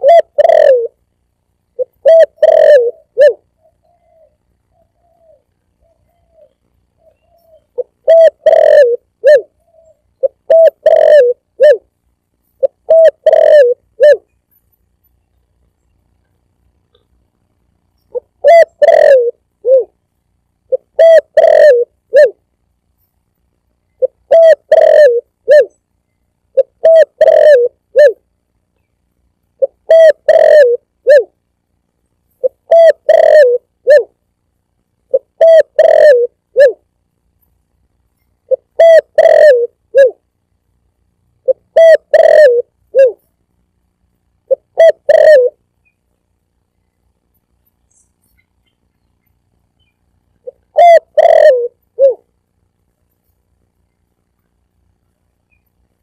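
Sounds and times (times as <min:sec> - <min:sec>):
dove cooing: 0:00.0 - 0:01.0, 0:01.8 - 0:11.9, 0:12.6 - 0:14.3, 0:18.0 - 0:20.0, 0:20.7 - 0:22.4, 0:24.0 - 0:25.8, 0:26.5 - 0:28.2, 0:29.6 - 0:31.4, 0:32.4 - 0:34.2, 0:35.1 - 0:36.9, 0:38.4 - 0:40.2, 0:41.4 - 0:43.3, 0:44.5 - 0:45.7, 0:50.4 - 0:52.3.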